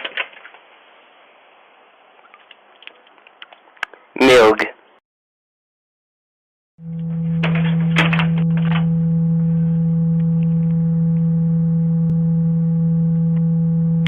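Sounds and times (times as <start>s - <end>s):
loud steady low hum: 6.8s - 14.0s.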